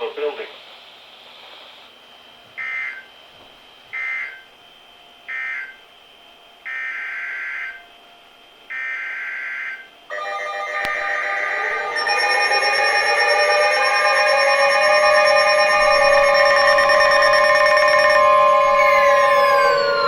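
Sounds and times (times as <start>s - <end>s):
steady multi-tone alarm: 2.6s - 3.1s, 3.9s - 4.6s, 5.2s - 5.9s, 6.6s - 8.1s, 8.7s - 20.0s
warbling digital data bursts: 10.6s - 20.0s.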